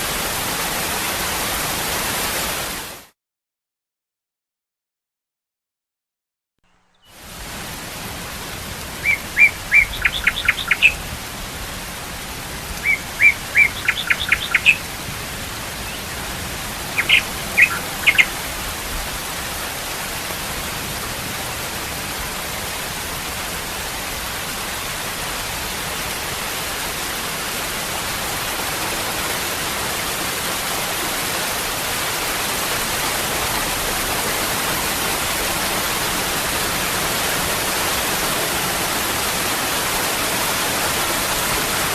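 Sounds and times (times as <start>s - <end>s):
waterfall rushing: 0.0s - 3.1s, 7.1s - 41.9s
bird chirping: 9.0s - 11.0s, 12.8s - 14.8s, 16.9s - 18.4s.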